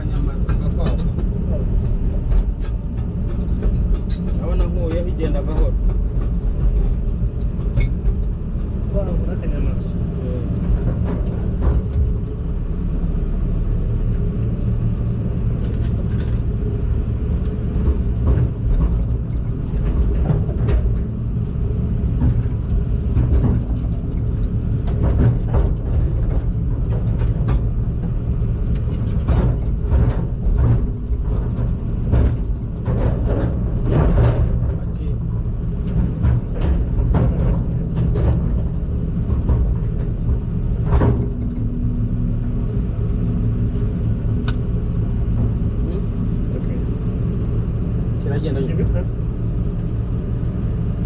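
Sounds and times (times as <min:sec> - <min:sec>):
knocks and clanks: 0:00.0 - 0:12.4, 0:17.8 - 0:47.6
heavy machine engine rumbling: 0:00.0 - 0:51.0.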